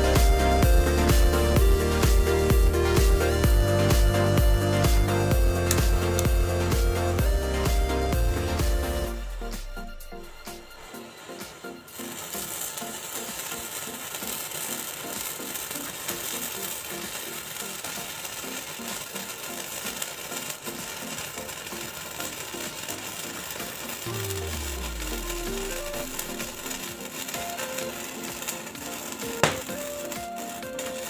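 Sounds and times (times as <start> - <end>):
background music with beat: 0.0 - 31.0
firecracker fizzing and crackling: 0.0 - 31.0.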